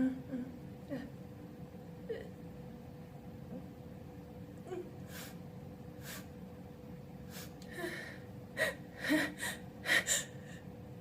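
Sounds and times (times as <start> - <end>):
faint sniffs: 6.0 - 6.3.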